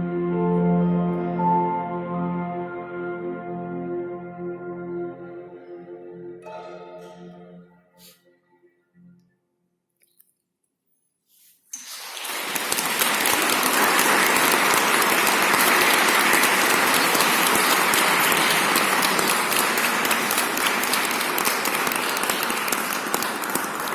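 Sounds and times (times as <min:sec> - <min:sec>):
audience applauding: 0:11.8 - 0:23.9.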